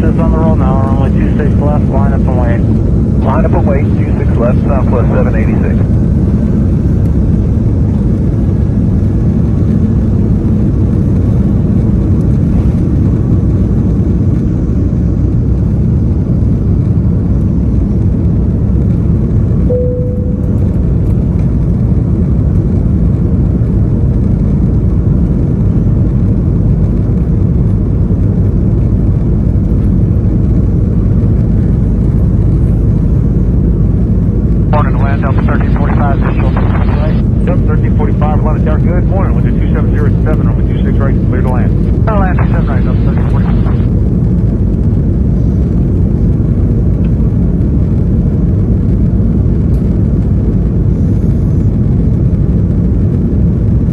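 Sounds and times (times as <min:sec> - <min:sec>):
jet engines rumbling in cabin: 0:00.0 - 0:53.9
single cabin tone: 0:19.7 - 0:21.2.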